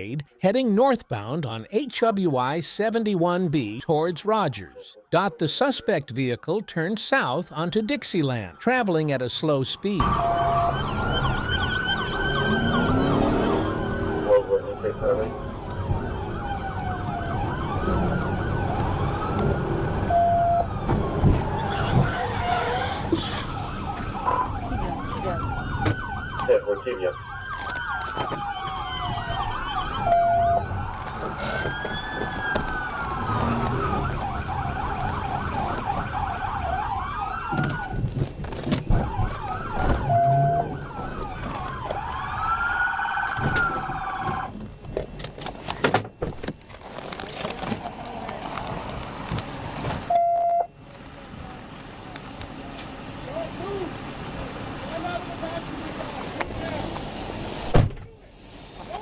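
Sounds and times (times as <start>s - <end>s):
police sirens wailing: 0.7s - 45.8s
vehicle engine and road noise: 1.1s - 59.0s
short beep: 50.1s - 50.7s.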